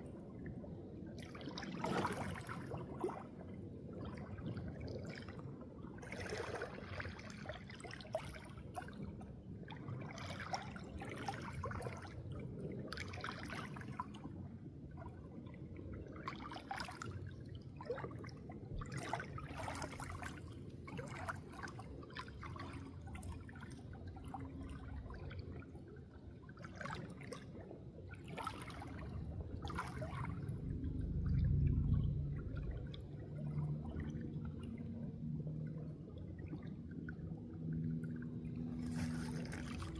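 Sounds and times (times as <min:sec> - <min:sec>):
water trickling and splashing: 0:00.0 - 0:39.9
low rumble: 0:28.8 - 0:39.9.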